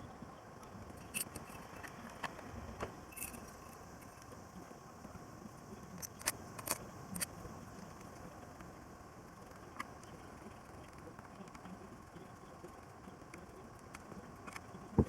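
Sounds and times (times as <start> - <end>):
light metallic clicks and clinks: 1.0 - 2.3, 3.1 - 4.3.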